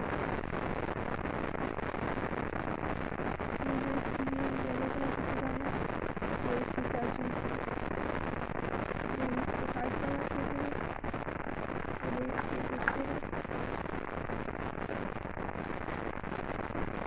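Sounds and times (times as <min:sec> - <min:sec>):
background hiss: 0:01.6 - 0:17.0
faint distant voices: 0:09.1 - 0:13.3.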